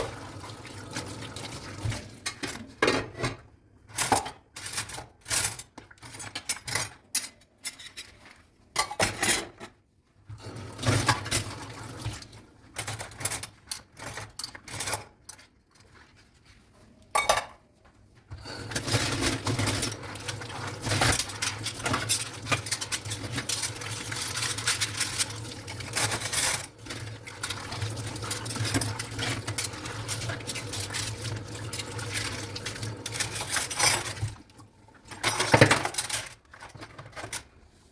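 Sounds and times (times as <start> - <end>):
running tap water: 0.0 - 2.3, 10.4 - 12.5, 18.4 - 35.2
dishes and cutlery clinking: 2.2 - 9.8, 17.1 - 17.6, 35.1 - 37.4.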